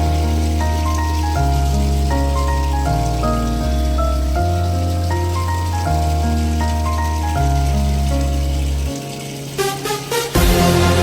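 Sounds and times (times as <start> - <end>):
background music with held notes: 0.0 - 11.0
deep bass: 10.4 - 11.0.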